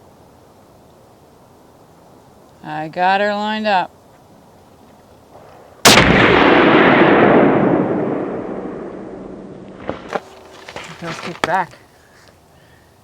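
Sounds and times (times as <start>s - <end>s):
rifle shot: 5.3s - 10.1s
gunshot echo: 5.4s - 10.1s.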